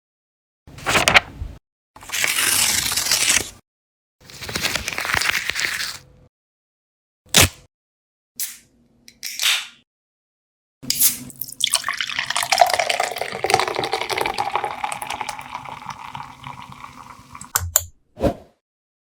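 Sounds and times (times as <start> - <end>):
splashing pouring water: 11.4 - 17.5.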